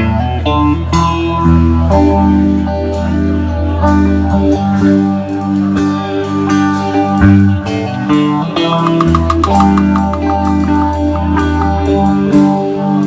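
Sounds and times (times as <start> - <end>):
electric guitar: 0.0 - 13.0
bass line: 8.2 - 12.8.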